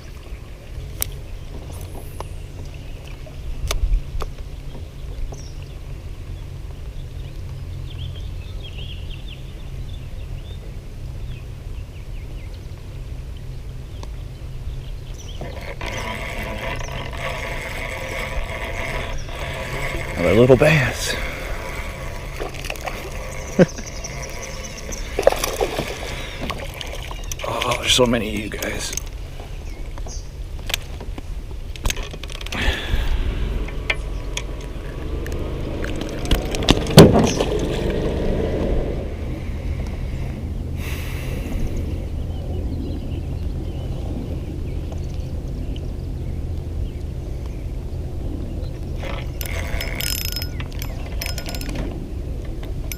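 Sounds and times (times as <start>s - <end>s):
wind rumble on microphone: 0.0s - 27.4s, 28.9s - 52.9s
fishing reel whirring: 15.4s - 27.4s, 49.0s - 51.9s.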